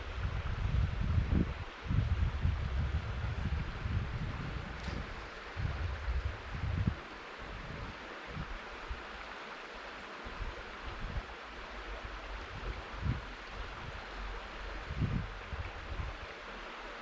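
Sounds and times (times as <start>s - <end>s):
wind buffeting microphone: 0.0s - 9.0s, 12.0s - 16.3s
river water flowing: 0.0s - 17.0s.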